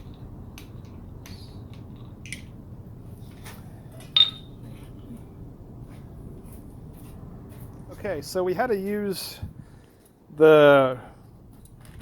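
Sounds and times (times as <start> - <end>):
loud ringing metal clink: 4.2 - 4.6
metal tools clicking: 4.2 - 4.6.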